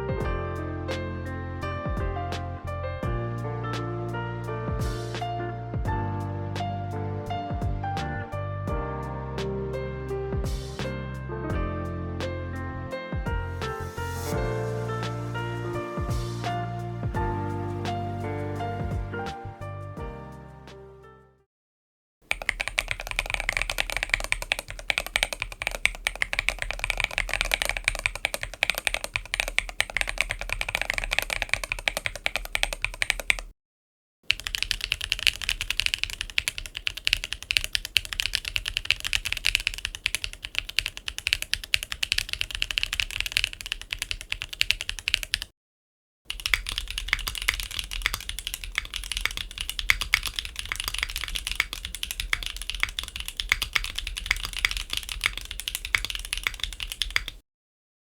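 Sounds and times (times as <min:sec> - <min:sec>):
mechanical keyboard typing: 0:22.3 - 0:33.5, 0:34.3 - 0:45.5, 0:46.3 - 0:57.4.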